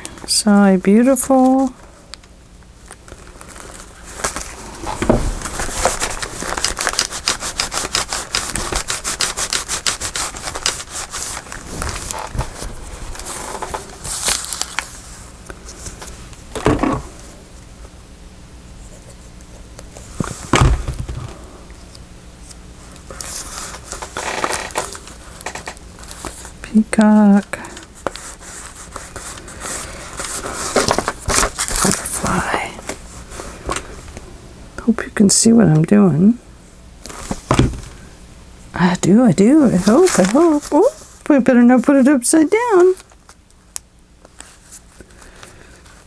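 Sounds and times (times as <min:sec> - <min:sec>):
light paper rustling: 0:02.8 - 0:16.2, 0:27.5 - 0:33.7, 0:39.5 - 0:46.0
paper crackling and scraping: 0:02.8 - 0:16.2, 0:21.8 - 0:26.6, 0:27.7 - 0:33.7, 0:39.5 - 0:41.2.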